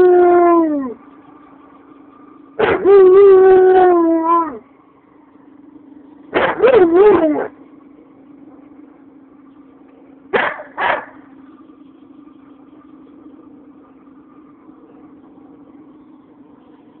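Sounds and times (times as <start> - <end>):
steady low hum: 0.0 - 17.0
dog barking: 2.6 - 3.2, 6.3 - 7.5, 10.3 - 11.3.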